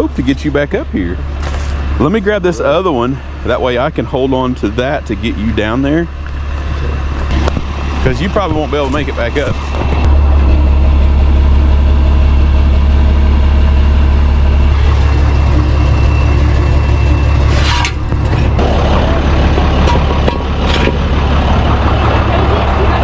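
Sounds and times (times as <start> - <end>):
truck engine idling: 0.0 - 23.0
metallic clanks: 17.5 - 18.6, 19.5 - 21.1.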